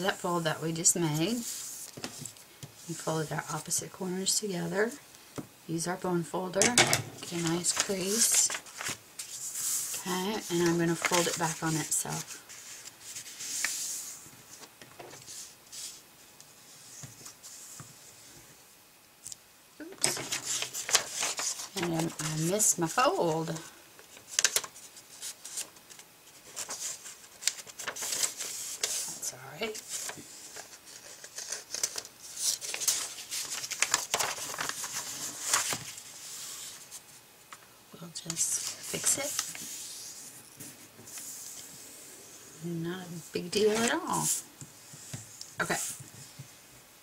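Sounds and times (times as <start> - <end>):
scratchy strokes across paper: 1.0 - 3.5, 7.4 - 18.4, 32.2 - 37.1, 38.4 - 42.6
paper folding and rustling: 6.6 - 18.2, 20.0 - 37.2, 38.2 - 41.7, 43.4 - 46.5.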